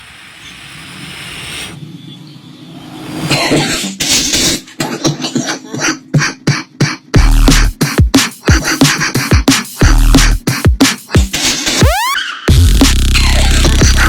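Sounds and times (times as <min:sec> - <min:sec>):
chopped sampled cough: 0:03.2 - 0:07.7.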